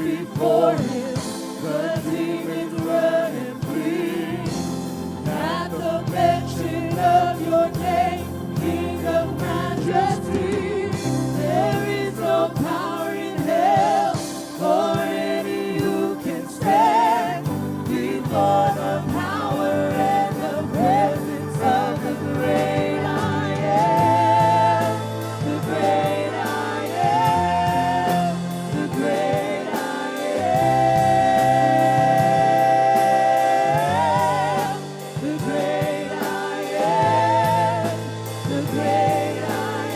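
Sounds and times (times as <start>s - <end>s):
person singing with vibrato: 0.0s - 39.9s
sustained chords: 0.0s - 39.9s.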